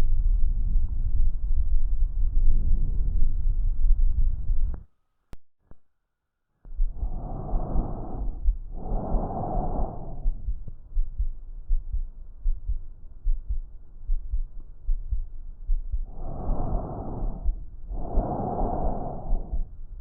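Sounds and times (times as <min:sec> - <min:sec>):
breath sounds through stethoscope: 0:06.7 - 0:12.0, 0:14.8 - 0:20.0
heartbeat thuds: 0:06.7 - 0:20.0.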